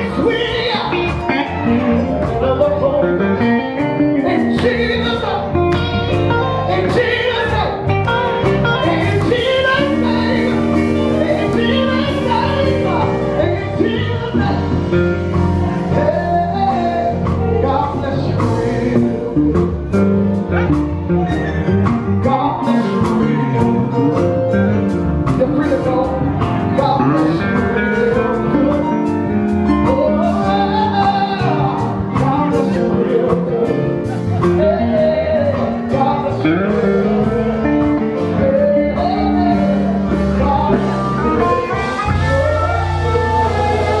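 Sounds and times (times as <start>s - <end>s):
gospel singing over guitar: 0.0s - 44.0s.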